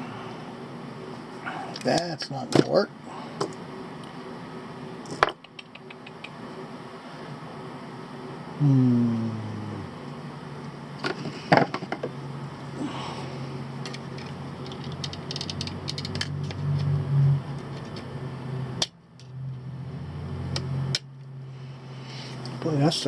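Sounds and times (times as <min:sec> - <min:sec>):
low hum: 0:05.7 - 0:22.2.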